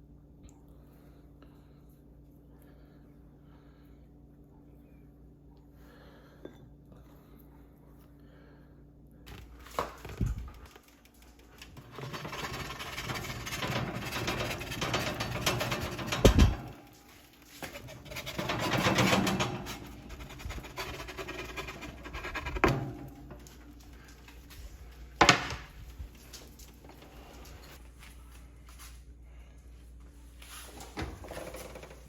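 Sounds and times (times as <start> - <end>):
rustling and scraping: 9.3 - 32.0.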